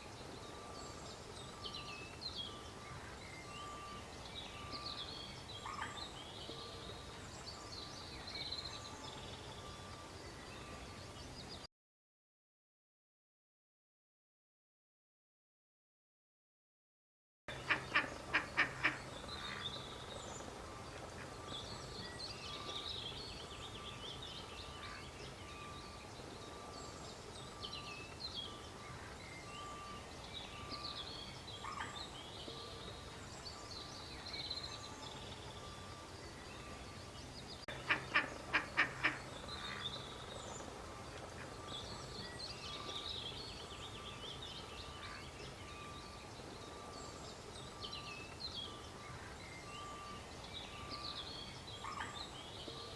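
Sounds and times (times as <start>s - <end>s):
small birds chirping: 17.5s - 52.9s
duck quacking: 17.7s - 19.0s, 37.7s - 39.2s.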